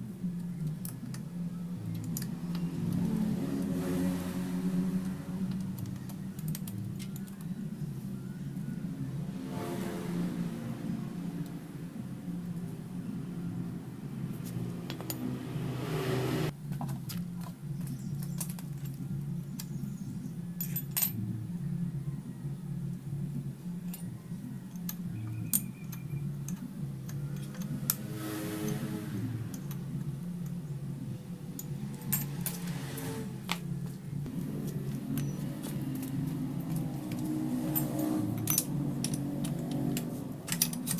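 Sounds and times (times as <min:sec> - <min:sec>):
metal tools clinking: 0:24.7 - 0:28.0, 0:34.3 - 0:40.9.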